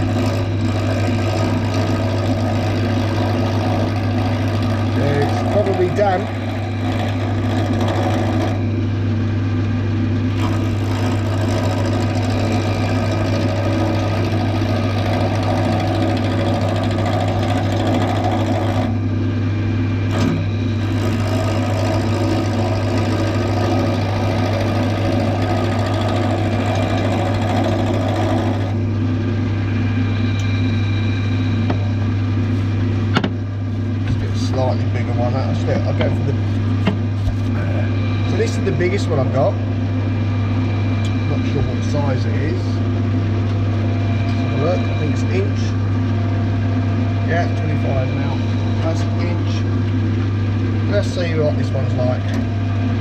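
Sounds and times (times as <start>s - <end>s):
gouge scraping wood: 0.0s - 8.7s, 10.4s - 19.0s, 20.2s - 28.8s
lathe motor hum: 0.0s - 53.0s.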